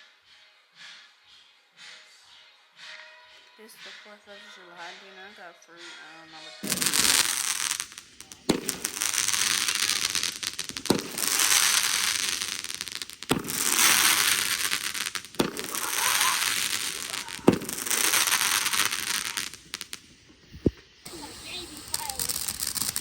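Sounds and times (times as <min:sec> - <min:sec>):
fireworks crackling hiss: 0:03.8 - 0:23.0
fireworks popping: 0:06.4 - 0:23.0.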